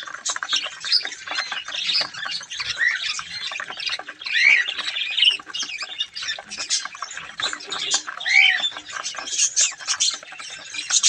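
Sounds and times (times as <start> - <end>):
budgerigars chattering: 0.0 - 11.0
budgerigar squawks: 7.8 - 8.7.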